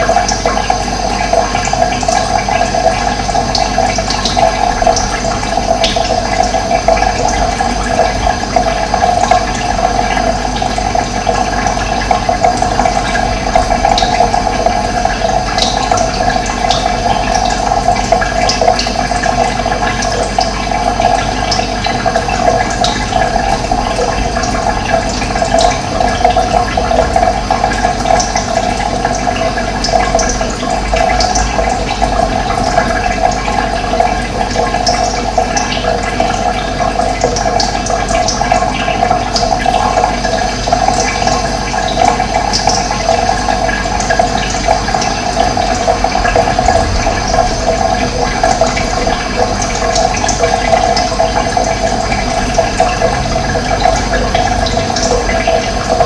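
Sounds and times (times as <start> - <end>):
water rushing: 0.0 - 56.0.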